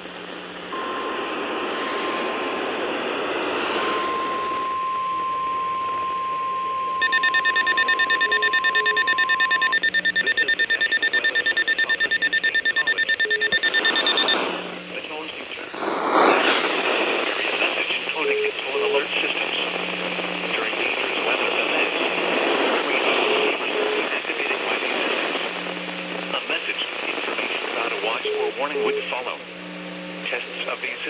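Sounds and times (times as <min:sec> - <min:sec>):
electronic alarm beeping rapidly: 0:07.0 - 0:14.4
steady alarm tone: 0:07.0 - 0:14.4.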